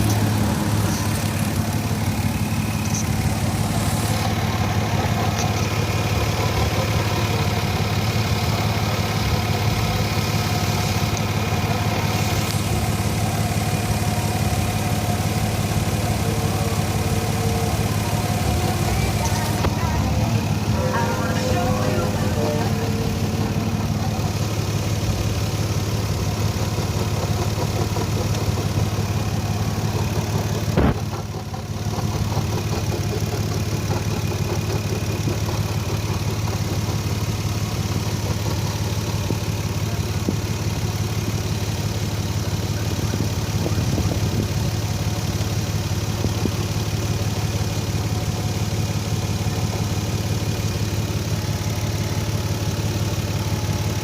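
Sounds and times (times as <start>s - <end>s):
car engine idling: 0.0s - 54.0s.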